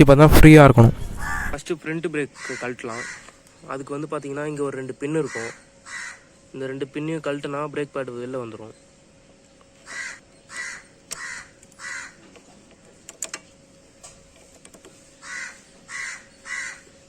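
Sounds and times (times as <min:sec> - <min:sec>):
crow cawing: 0:01.0 - 0:01.6, 0:02.3 - 0:03.4, 0:05.2 - 0:06.4, 0:09.8 - 0:12.4, 0:15.2 - 0:17.0.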